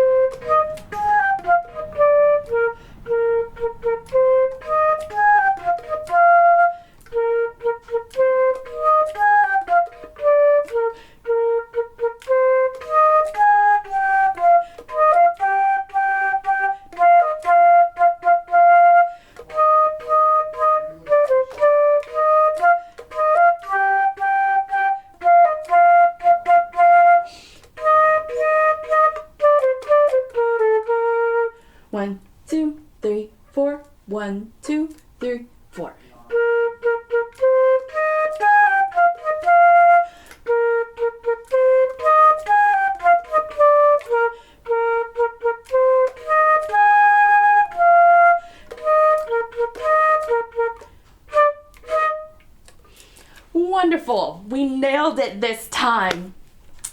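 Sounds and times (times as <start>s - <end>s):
solo flute melody: 0.0s - 32.1s, 36.2s - 52.7s.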